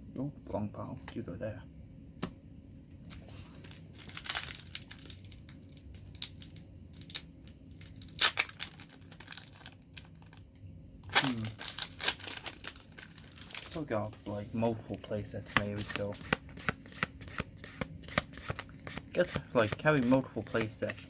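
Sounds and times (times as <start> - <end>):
foil wrapper crinkling and tearing: 3.6 - 10.4, 11.0 - 13.9, 18.1 - 21.0.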